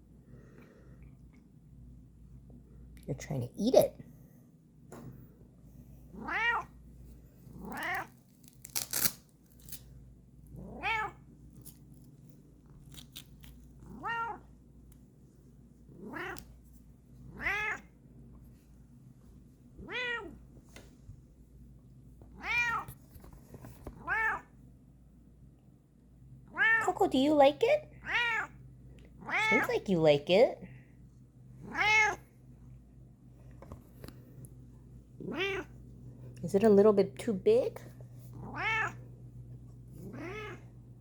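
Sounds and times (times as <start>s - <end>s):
cat meowing: 6.2s - 6.7s, 10.6s - 11.2s, 13.9s - 14.4s, 16.0s - 16.4s, 17.3s - 17.8s, 19.8s - 20.4s, 22.4s - 22.9s, 24.0s - 24.4s, 29.2s - 29.6s, 31.6s - 32.2s, 35.2s - 35.7s, 38.4s - 39.0s, 40.0s - 40.6s.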